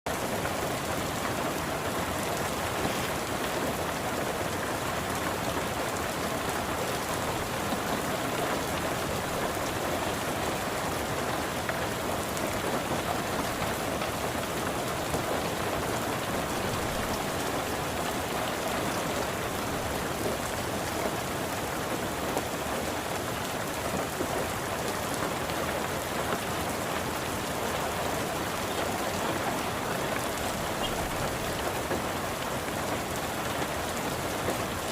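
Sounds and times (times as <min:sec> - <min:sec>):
steady rain falling: 0:00.1 - 0:34.9.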